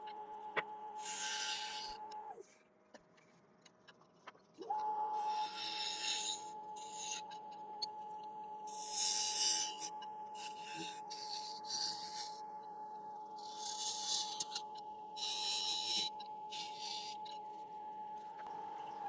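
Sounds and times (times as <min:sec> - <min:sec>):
turning tool scraping wood: 0:01.0 - 0:02.0, 0:05.3 - 0:07.3, 0:08.7 - 0:12.4, 0:13.4 - 0:17.3
wood lathe motor whine: 0:01.0 - 0:02.2, 0:04.6 - 0:12.4, 0:13.4 - 0:19.0.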